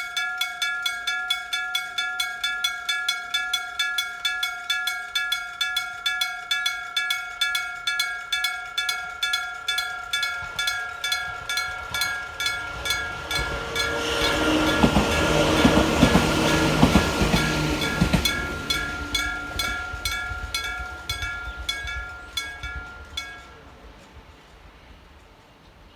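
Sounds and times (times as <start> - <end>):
level crossing bell ringing: 0.0 - 23.6
train wheels clacking over rail joints: 8.9 - 25.6
train rushing past: 9.2 - 25.9.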